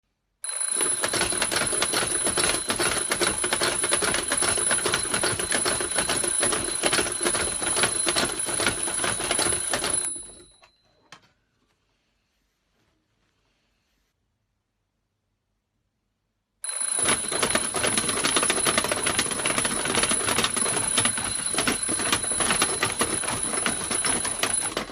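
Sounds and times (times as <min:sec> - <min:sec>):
alarm bell ringing: 0:00.4 - 0:11.1, 0:16.6 - 0:24.9.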